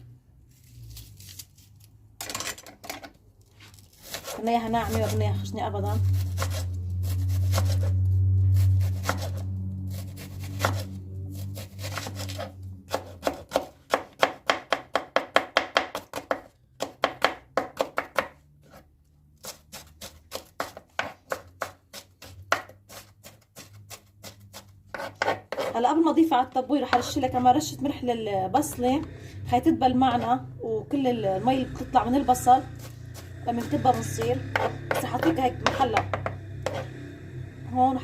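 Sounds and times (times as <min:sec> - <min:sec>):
knife chopping on cutting board: 0:10.4 - 0:10.8, 0:11.8 - 0:18.8, 0:19.4 - 0:25.7, 0:33.9 - 0:36.9.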